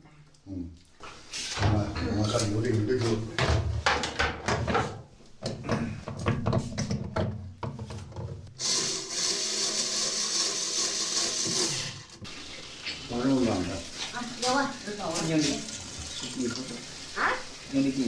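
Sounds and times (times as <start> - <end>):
rubbing and knocking: 1.3 - 18.0
water rushing: 11.3 - 18.0.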